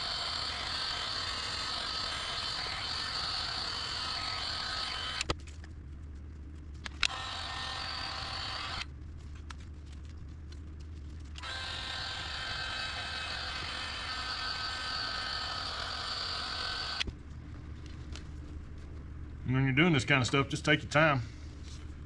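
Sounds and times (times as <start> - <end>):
heat gun blowing hot air: 0.0 - 5.3, 7.1 - 8.8, 11.4 - 17.0
steady low hum: 0.0 - 22.0.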